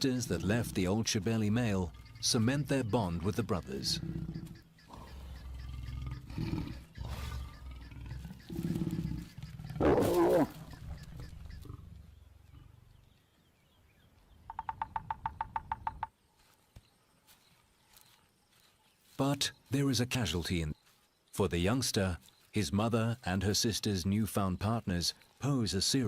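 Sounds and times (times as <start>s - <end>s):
lions growling: 0.1s - 13.2s
lion snarling: 3.6s - 13.0s.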